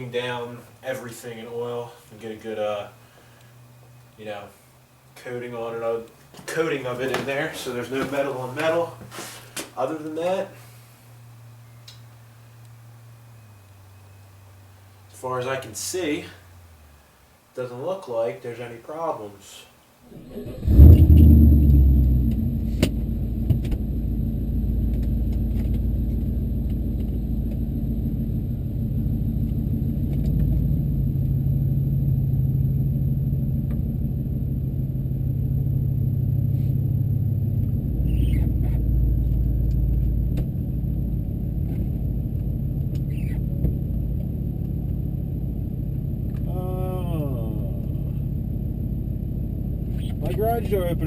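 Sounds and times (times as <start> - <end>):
car engine starting and idling: 10.6 - 17.3, 20.1 - 51.0.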